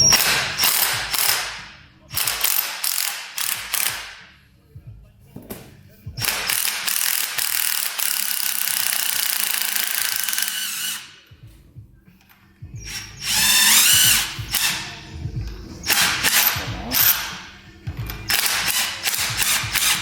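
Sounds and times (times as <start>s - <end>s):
ratchet wrench clicking: 0.0s - 4.2s, 6.2s - 11.0s, 12.9s - 15.0s, 15.9s - 17.4s, 18.0s - 20.0s.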